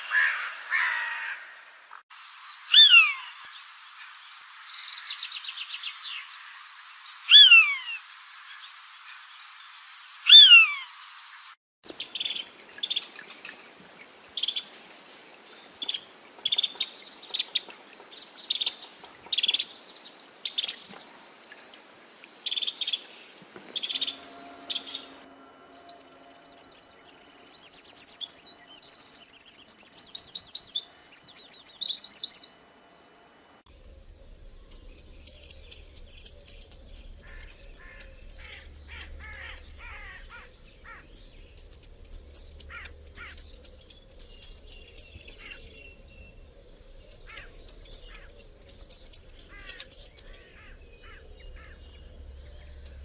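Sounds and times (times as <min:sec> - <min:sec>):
bird chirping: 0:11.9 - 0:14.8, 0:15.5 - 0:32.6, 0:33.8 - 0:53.0
bird warbling trill: 0:23.7 - 0:32.5, 0:34.4 - 0:46.4, 0:47.1 - 0:53.0
falling whistled bird notes: 0:23.8 - 0:32.5, 0:34.7 - 0:41.0.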